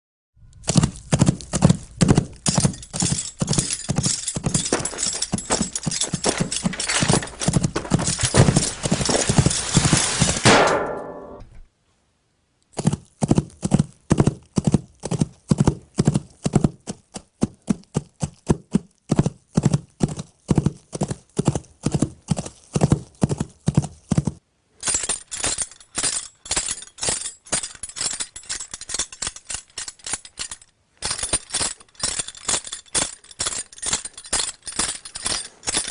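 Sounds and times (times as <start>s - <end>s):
clip-clop of hoofbeats: 0.6s - 10.5s, 12.8s - 24.4s, 25.5s - 35.9s.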